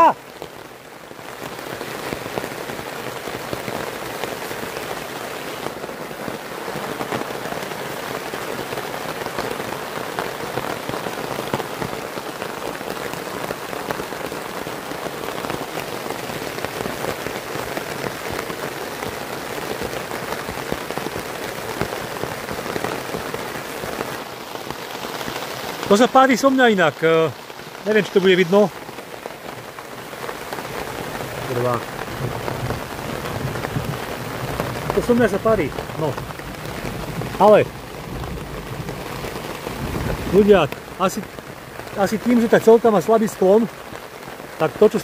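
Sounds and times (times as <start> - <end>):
heavy rain on a tarp: 0.0 - 45.0.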